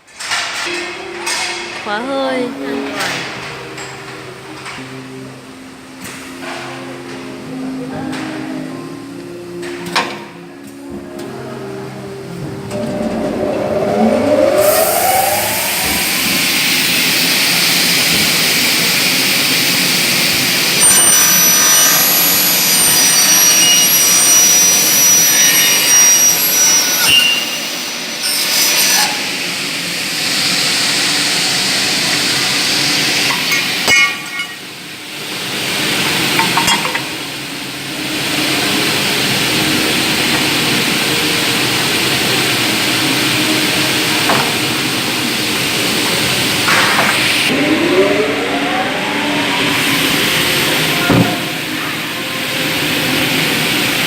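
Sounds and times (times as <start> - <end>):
saw motor whining: 12.8 - 34.7
saw blade squealing through metal: 20.8 - 29.4.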